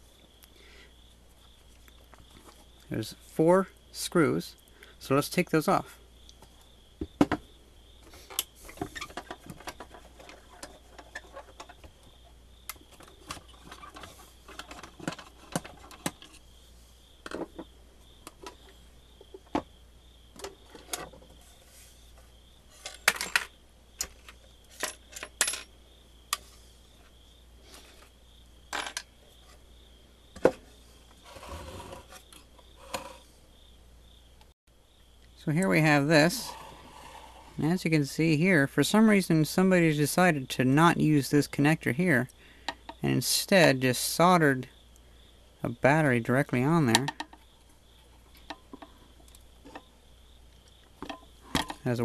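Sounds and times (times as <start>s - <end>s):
small metal parts clinking: 22.8s - 25.8s.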